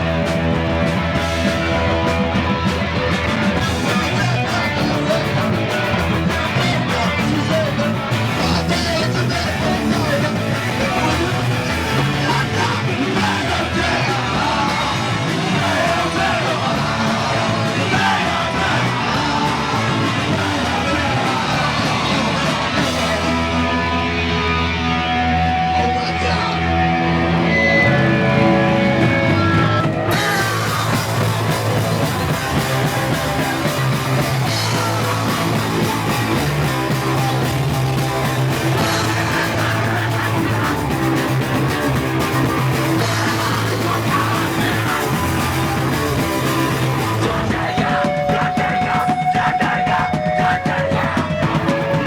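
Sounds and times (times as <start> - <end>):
distorted electric guitar: 0.0 - 52.0
drums: 0.0 - 52.0
shouted vocals: 0.0 - 52.0.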